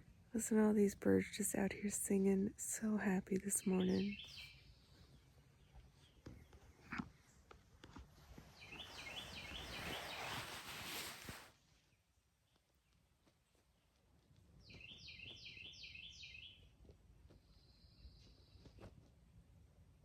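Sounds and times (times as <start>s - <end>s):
songbird singing: 0.0s - 10.6s, 14.6s - 18.8s.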